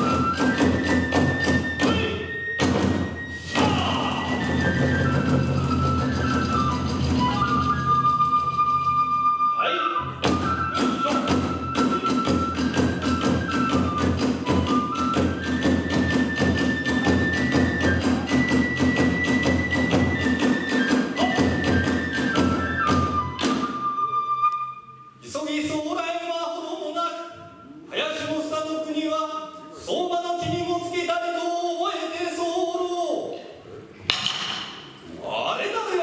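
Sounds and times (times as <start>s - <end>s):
drums beating: 0.0s - 9.2s, 10.2s - 23.8s
bamboo flute melody: 0.0s - 25.2s.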